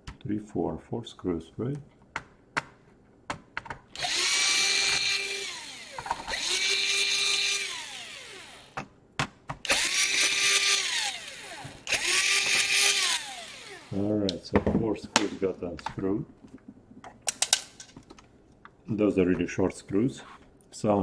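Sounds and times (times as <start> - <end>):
electric screwdriver whirring: 4.0 - 8.8, 9.6 - 14.0.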